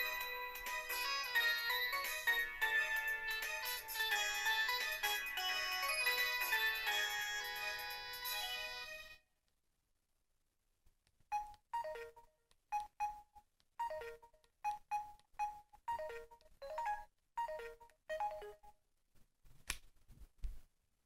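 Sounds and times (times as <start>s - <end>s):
phone ringtone electronic notes: 0.0s - 9.0s, 11.3s - 18.8s.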